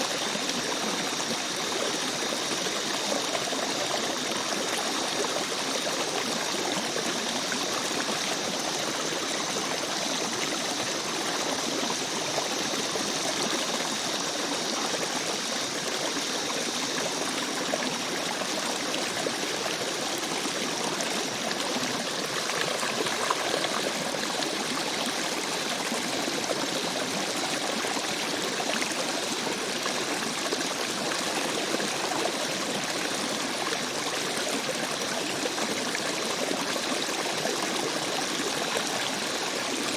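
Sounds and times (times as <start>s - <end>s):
stream running over rocks: 0.0s - 39.9s.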